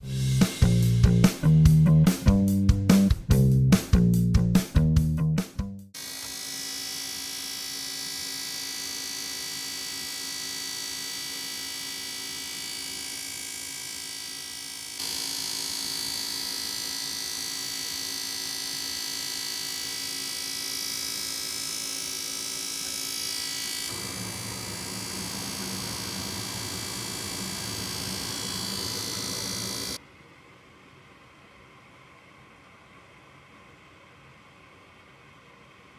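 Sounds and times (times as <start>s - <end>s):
furnace inducer fan humming: 23.8s - 30.0s.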